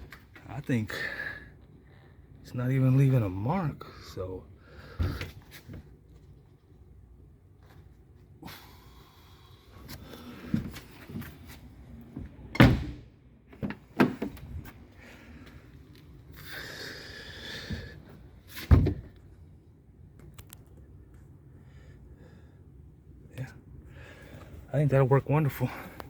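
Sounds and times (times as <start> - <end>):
car door slamming shut: 12.5 - 13.0.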